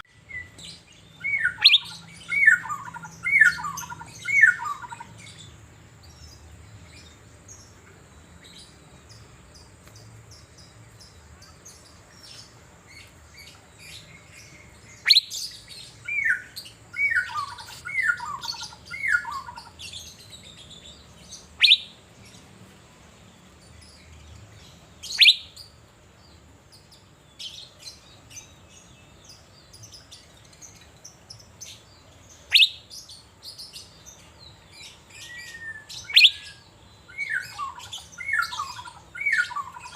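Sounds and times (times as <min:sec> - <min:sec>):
faint chirps: 0:00.0 - 0:39.9
falling whistles: 0:21.6 - 0:21.9, 0:36.1 - 0:36.5.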